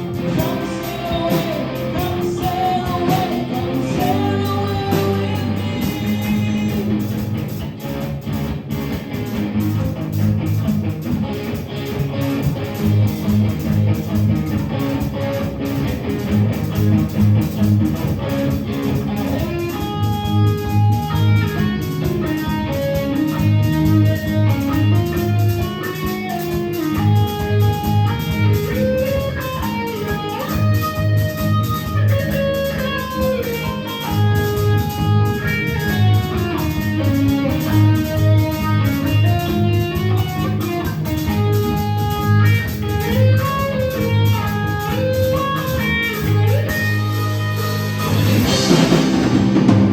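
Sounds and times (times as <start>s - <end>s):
rock band playing: 0.0s - 49.9s
lead melody of held notes: 19.4s - 49.9s.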